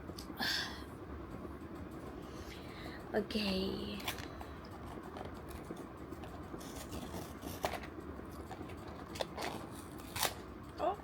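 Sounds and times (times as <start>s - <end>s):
packaging rustling and clicking: 6.6s - 10.4s.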